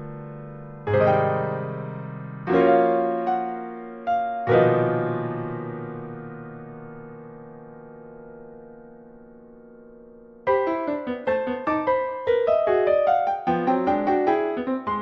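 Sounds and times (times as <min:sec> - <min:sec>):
slow piano music: 0:00.0 - 0:15.0.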